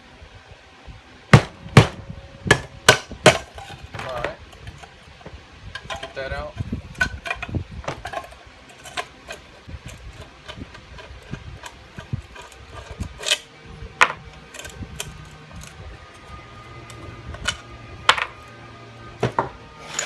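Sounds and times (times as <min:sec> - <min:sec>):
metal parts clicking and knocking: 0:05.8 - 0:16.3.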